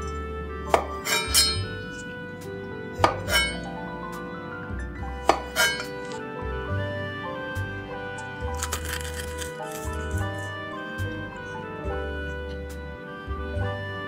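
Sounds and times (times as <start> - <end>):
background music sustained tones: 0.0 - 14.0
crunching eating sounds: 8.0 - 11.6.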